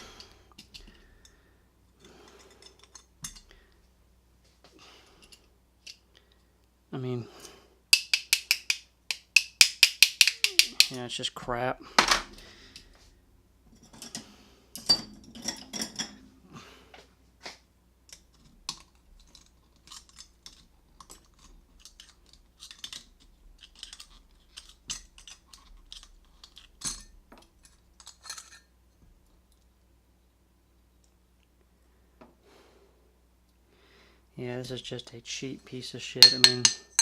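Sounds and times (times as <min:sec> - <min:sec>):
lock parts clicking and clinking: 0:07.9 - 0:11.0, 0:18.1 - 0:28.7.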